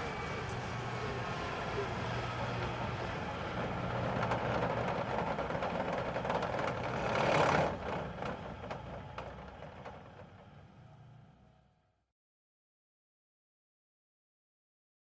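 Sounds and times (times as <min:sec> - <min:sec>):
helicopter flying: 0:00.0 - 0:10.4.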